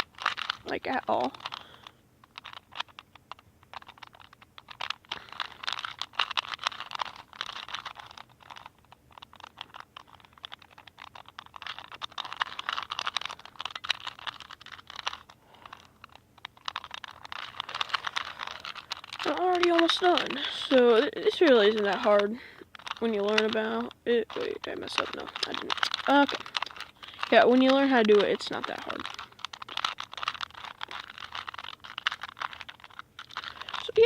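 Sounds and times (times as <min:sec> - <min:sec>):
puzzle cube plastic layers clicking: 0:00.0 - 0:34.0.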